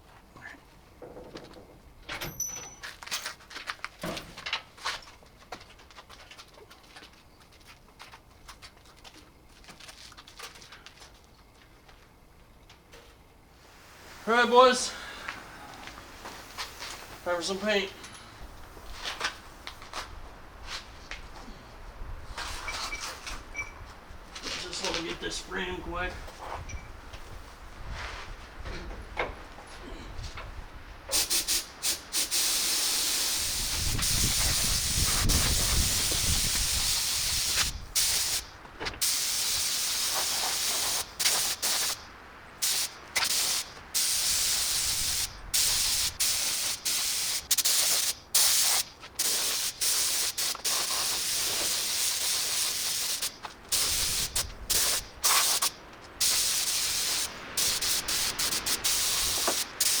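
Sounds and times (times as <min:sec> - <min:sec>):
paint spray hissing: 0:15.3 - 0:17.8, 0:31.1 - 0:42.0, 0:42.6 - 1:00.0.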